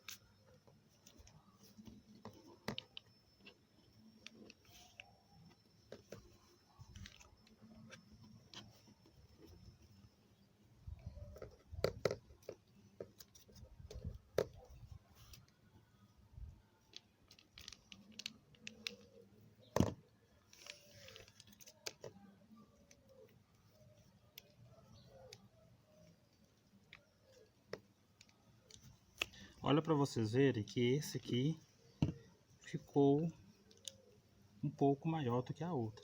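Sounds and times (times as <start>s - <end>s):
paper and straws rustling: 20.5s - 21.9s.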